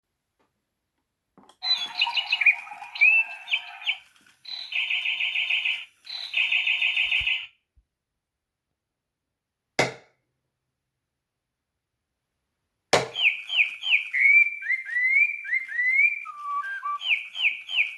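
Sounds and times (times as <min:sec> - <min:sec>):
electronic toy bird chirping: 0:01.6 - 0:07.5, 0:13.1 - 0:17.9.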